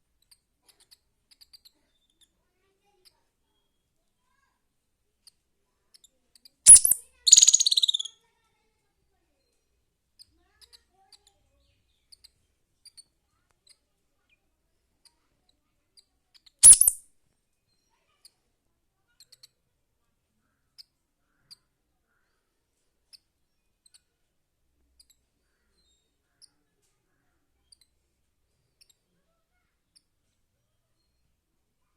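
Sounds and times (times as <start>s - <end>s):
squirrel chirping: 6.7s - 8.1s, 16.6s - 17.0s.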